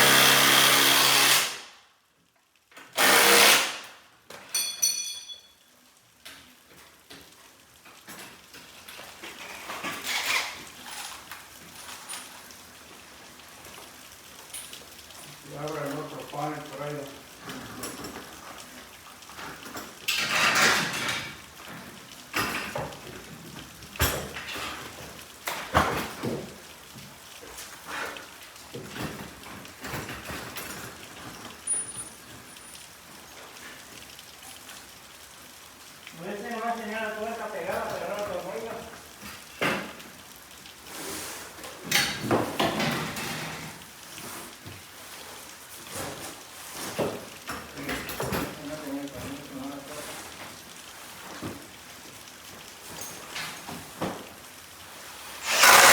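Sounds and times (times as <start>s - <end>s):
sharp metallic clanks: 4.5s - 5.5s.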